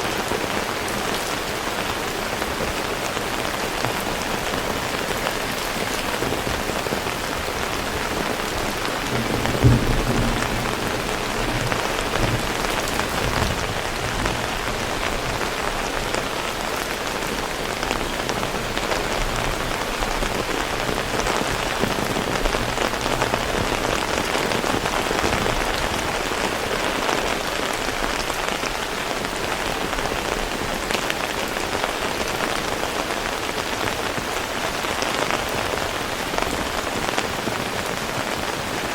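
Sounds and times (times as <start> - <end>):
heavy rain falling: 0.0 - 38.9
low thump: 9.0 - 14.4.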